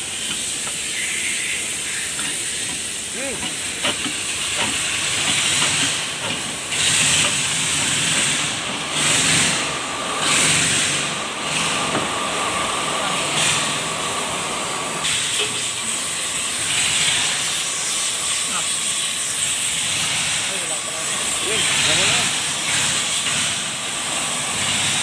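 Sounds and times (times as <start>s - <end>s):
steady hiss with surges: 0.0s - 25.0s.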